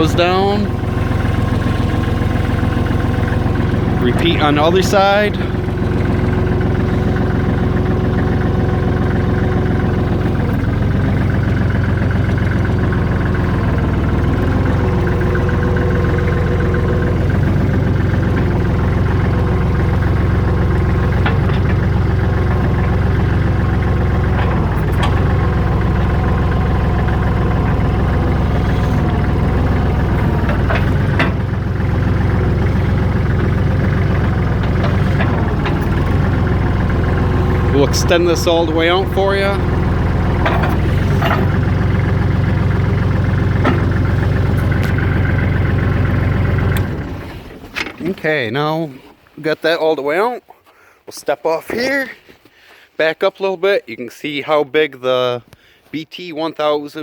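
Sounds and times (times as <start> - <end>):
diesel engine running: 0.0 - 48.2.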